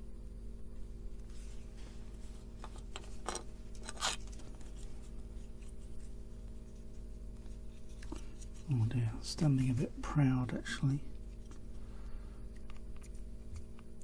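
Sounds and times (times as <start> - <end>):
low electrical hum: 0.0 - 14.0
small parts scraping and clicking: 2.6 - 4.9.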